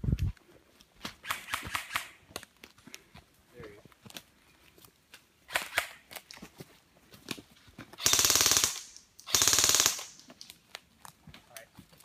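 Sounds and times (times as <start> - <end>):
airsoft rifle full-auto bursts: 8.0 - 10.2.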